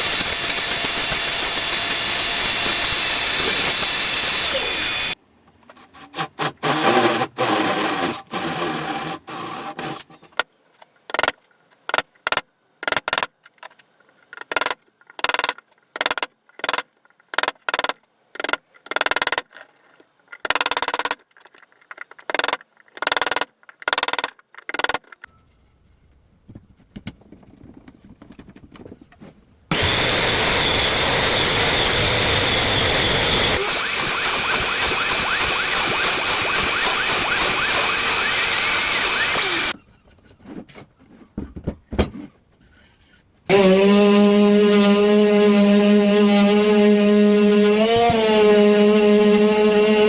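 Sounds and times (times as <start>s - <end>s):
handsaw cutting wood: 0.0s - 5.2s, 6.0s - 10.0s, 29.7s - 39.8s, 43.5s - 50.0s.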